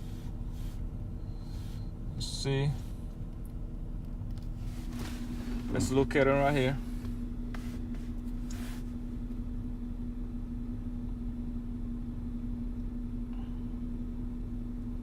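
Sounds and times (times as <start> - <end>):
car steady hum: 0.0 - 15.0
rustles: 4.3 - 9.0.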